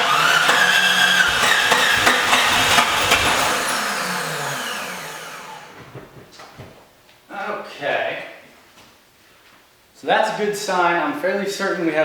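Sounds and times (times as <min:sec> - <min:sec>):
engine cranking and sputtering: 0:00.0 - 0:05.9.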